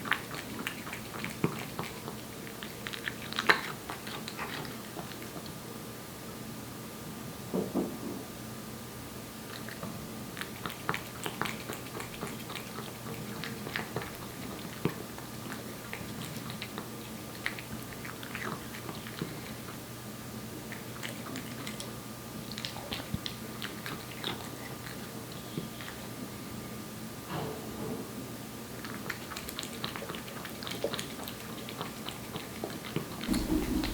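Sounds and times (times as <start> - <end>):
cat chewing wet food: 0.0 - 5.6, 9.5 - 19.9, 20.5 - 26.2, 28.7 - 33.9.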